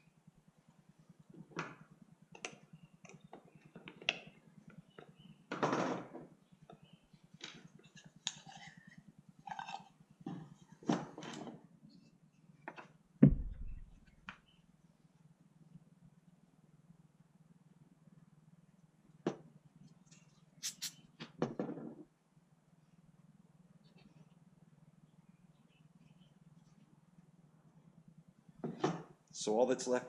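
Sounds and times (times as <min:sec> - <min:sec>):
heavy thump: 0:13.2 - 0:14.1
brief rustle: 0:20.6 - 0:21.0.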